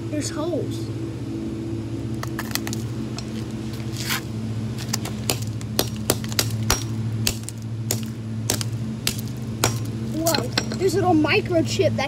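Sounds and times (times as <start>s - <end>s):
steady low hum: 0.0s - 12.0s.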